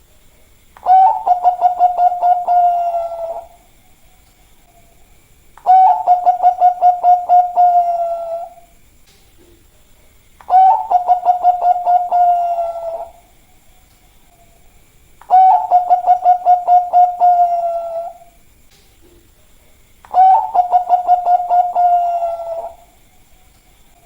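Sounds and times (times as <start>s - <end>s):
dove cooing song: 0.8s - 3.8s, 5.6s - 8.7s, 10.4s - 13.3s, 15.2s - 18.4s, 20.1s - 23.1s.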